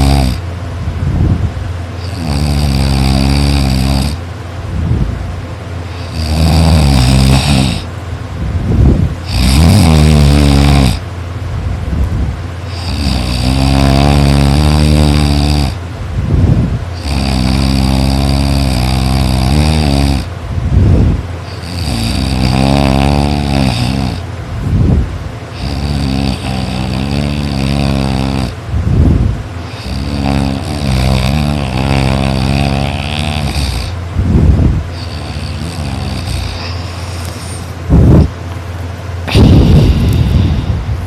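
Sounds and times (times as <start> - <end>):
person snoring loudly: 0.0 - 0.4, 2.0 - 4.2, 5.9 - 7.9, 8.8 - 11.0, 12.7 - 24.9, 25.5 - 38.3, 39.2 - 41.0
short sharp breath: 39.3 - 40.9.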